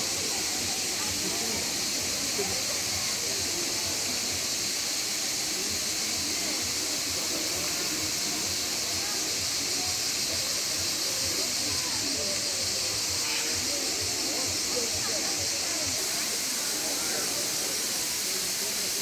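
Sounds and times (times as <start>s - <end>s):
waterfall rushing: 0.0s - 19.0s.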